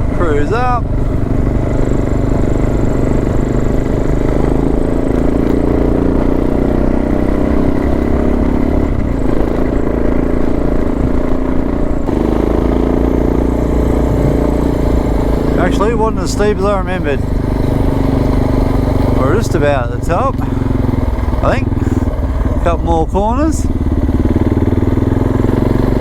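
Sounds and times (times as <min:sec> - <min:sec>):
motorcycle engine running: 0:00.0 - 0:26.0
wind noise: 0:13.4 - 0:23.5.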